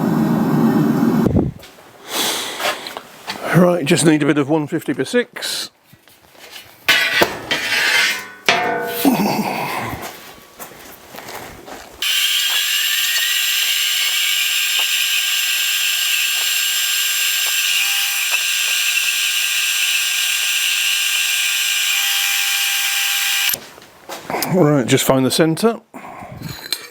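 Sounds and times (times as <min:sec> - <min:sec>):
power tool motor whining: 0:12.0 - 0:23.6.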